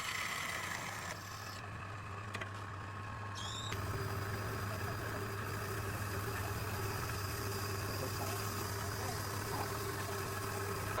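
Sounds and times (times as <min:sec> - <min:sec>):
wood lathe motor humming: 0:00.0 - 0:01.8, 0:03.4 - 0:11.0.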